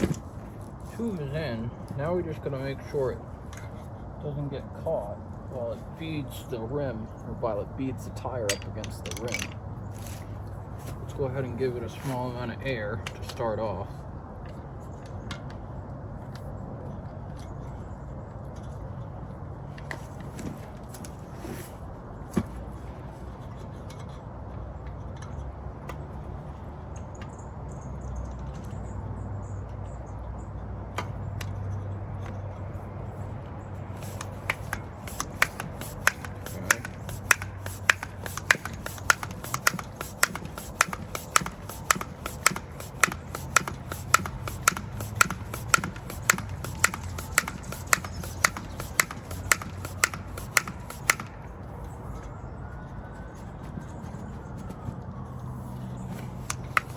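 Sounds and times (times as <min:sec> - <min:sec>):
tyre pump pumping: 0:00.0 - 0:01.4, 0:33.8 - 0:51.5, 0:55.6 - 0:56.9
tyre pump clicking: 0:33.8 - 0:51.4, 0:56.1 - 0:56.9.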